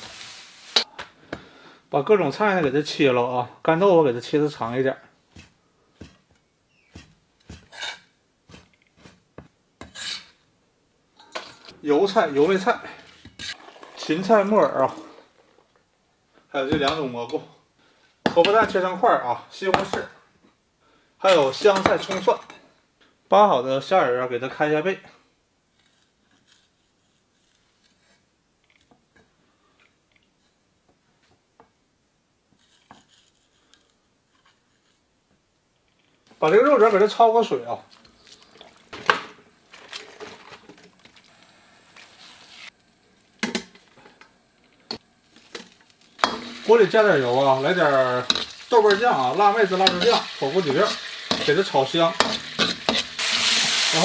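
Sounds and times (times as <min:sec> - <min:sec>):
knife scraping: 0:05.3 - 0:09.2, 0:09.8 - 0:10.4, 0:13.1 - 0:13.8, 0:25.8 - 0:28.2, 0:32.6 - 0:35.0, 0:44.9 - 0:54.0.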